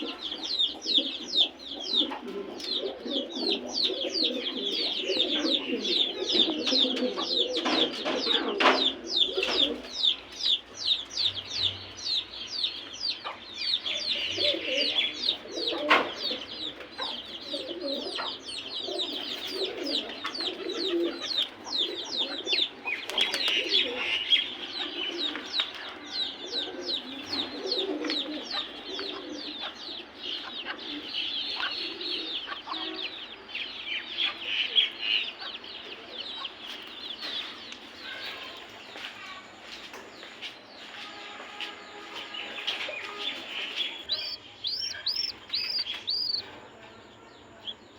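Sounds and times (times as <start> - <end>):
pigeons cooing: 0.0 - 10.2, 14.0 - 33.5, 42.6 - 47.1
chicken clucks: 15.6 - 18.6, 42.7 - 47.1
high-pitched bird chirps: 43.0 - 46.4.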